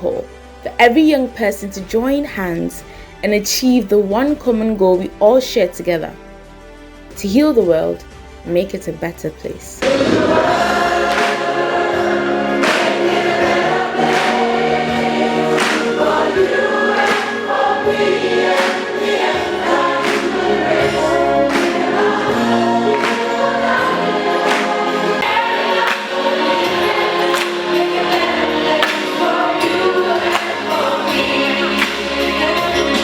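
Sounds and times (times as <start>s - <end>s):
gospel choir singing: 9.8s - 33.0s
steady beat: 9.8s - 33.0s.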